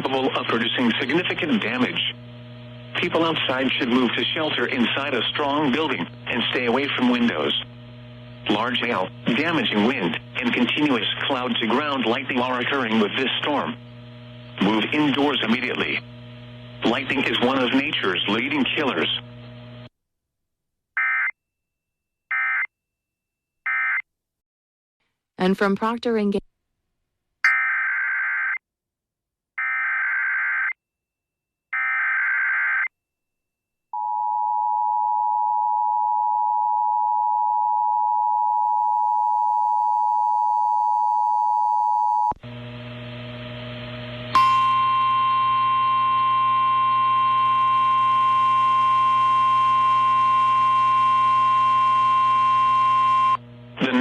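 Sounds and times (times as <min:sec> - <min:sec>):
radio hum: 0:00.0 - 0:19.9, 0:46.2 - 0:54.0.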